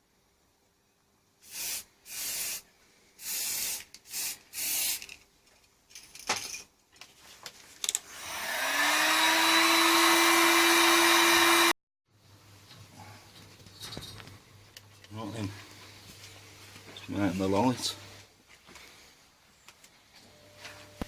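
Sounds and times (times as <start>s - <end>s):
short hissing bursts: 1.4s - 5.2s
small electric motor running: 8.1s - 11.7s.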